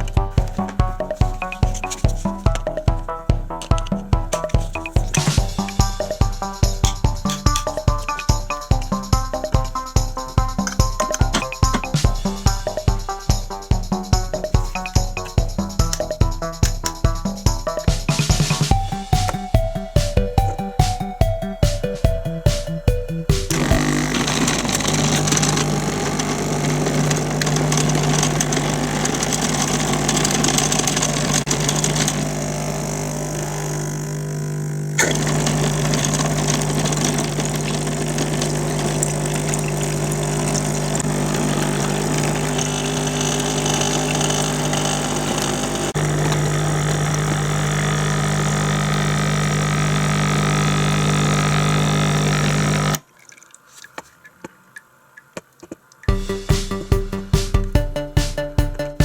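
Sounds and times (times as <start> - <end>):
espresso machine pump buzzing: 23.5 - 53.0.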